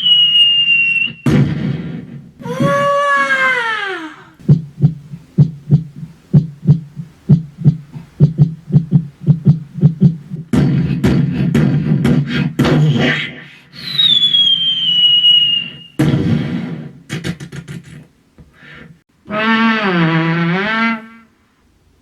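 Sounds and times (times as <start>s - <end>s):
downward sliding whistle: 0.0s - 1.3s, 13.8s - 16.0s
mouth clicks and thumps: 4.4s - 13.2s, 15.6s - 18.6s.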